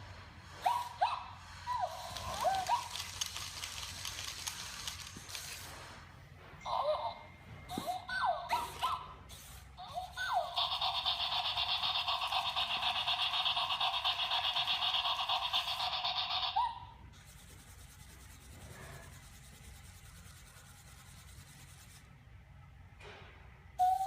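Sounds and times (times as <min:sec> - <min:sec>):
toy motor buzzing: 0:00.6 - 0:06.0, 0:06.7 - 0:17.0.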